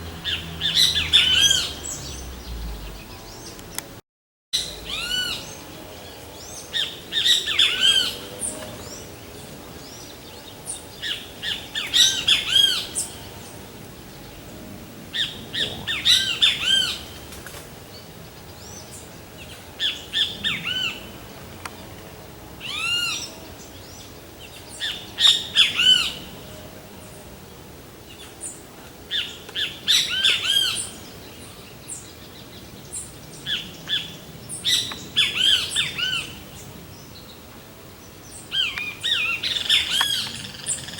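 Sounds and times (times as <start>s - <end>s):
bird harsh ringing calls: 38.5s - 40.9s.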